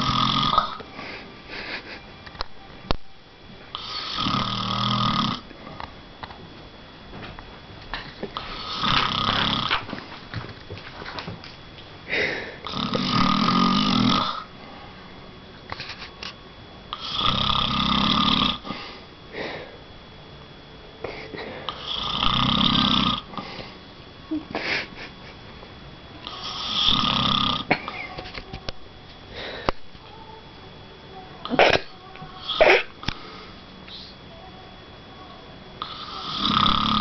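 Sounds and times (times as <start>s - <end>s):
man snoring: 0.0s - 0.8s, 3.7s - 5.5s, 8.4s - 9.8s, 12.1s - 14.5s, 16.9s - 18.8s, 21.2s - 23.5s, 26.2s - 27.7s, 35.8s - 37.0s
quiet breathing: 29.3s - 29.9s, 33.0s - 34.2s.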